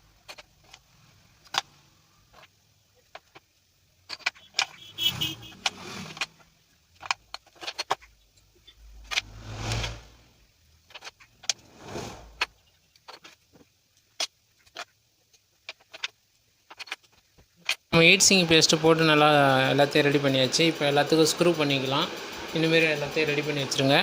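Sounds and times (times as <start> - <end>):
rubbing scraping noises: 4.4 - 6.5, 8.8 - 10.3, 11.1 - 12.6.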